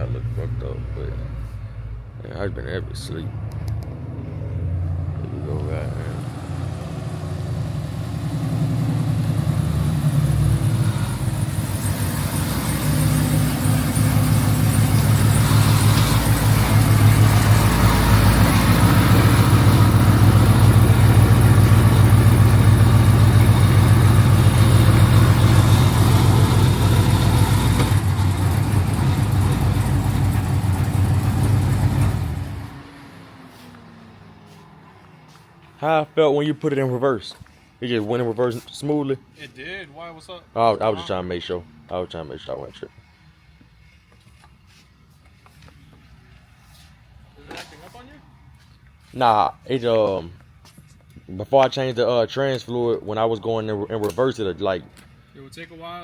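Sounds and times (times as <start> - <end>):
car engine running: 4.8 - 32.8.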